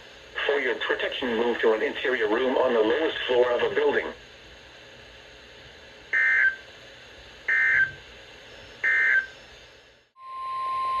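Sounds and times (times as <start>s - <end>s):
radio hiss: 0.0s - 4.4s.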